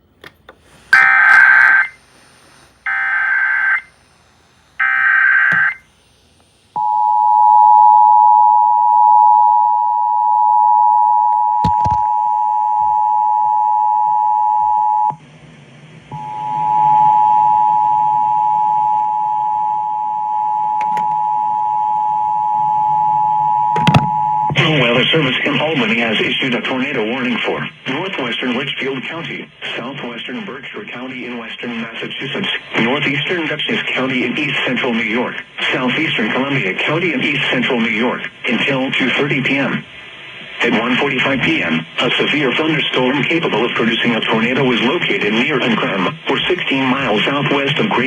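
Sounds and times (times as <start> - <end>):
low hum and hiss: 0.0 - 48.0
screeching data tone bursts: 0.9 - 2.0, 2.8 - 3.9, 4.8 - 5.9
two-tone attention signal: 1.0 - 2.0, 4.8 - 5.8.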